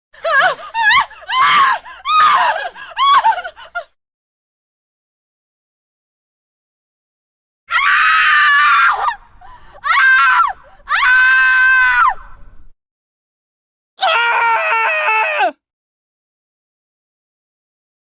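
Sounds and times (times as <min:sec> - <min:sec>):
high-pitched human screams: 0:07.7 - 0:09.2, 0:09.8 - 0:12.2, 0:14.0 - 0:15.6.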